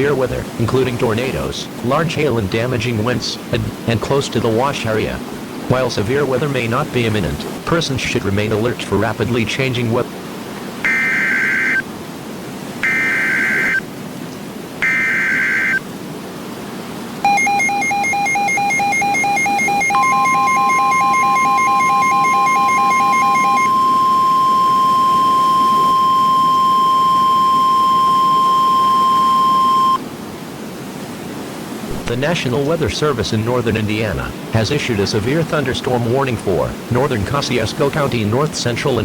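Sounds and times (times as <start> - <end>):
pulsing two-pitch electronic beeping: 10.8 - 11.8, 12.8 - 13.8, 14.8 - 15.8, 17.3 - 30.0
steady warning alarm tone: 10.8 - 11.8, 12.8 - 13.9, 14.8 - 15.9, 17.2 - 30.0
warbling digital data bursts: 10.8 - 11.8, 12.8 - 13.8, 14.8 - 15.8, 17.3 - 30.0.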